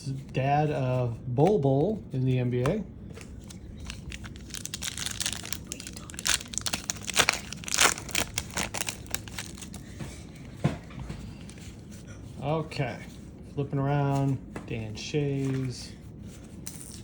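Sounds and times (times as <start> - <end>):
plastic wrapper crinkling: 3.2 - 9.9.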